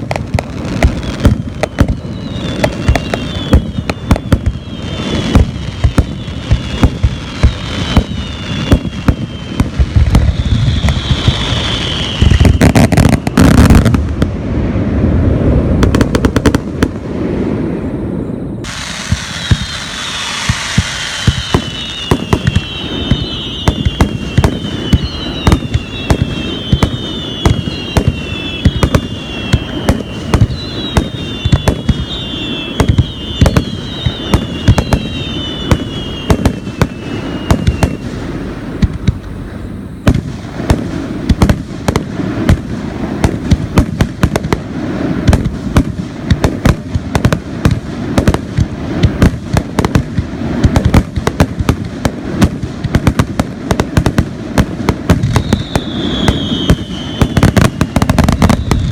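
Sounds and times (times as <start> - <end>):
fireworks bangs and crackles: 0.0 - 58.9
high falling whistles: 0.9 - 13.8, 17.7 - 40.1, 55.3 - 58.9.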